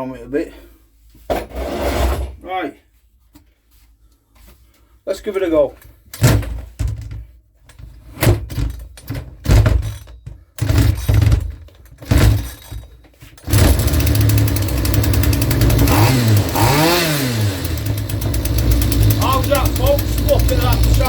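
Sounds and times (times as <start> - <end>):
recoil starter pulls: 10.6 - 21.0
strimmer engine running and revving: 13.5 - 21.0.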